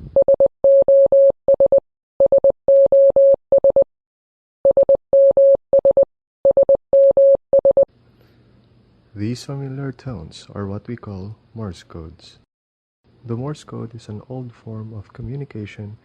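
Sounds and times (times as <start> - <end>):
morse code beeps: 0.2 - 3.9, 4.7 - 7.9.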